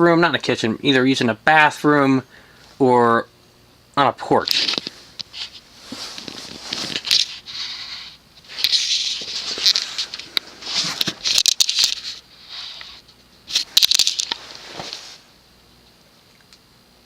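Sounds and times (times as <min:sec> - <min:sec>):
rustling and scraping: 0:04.5 - 0:15.3.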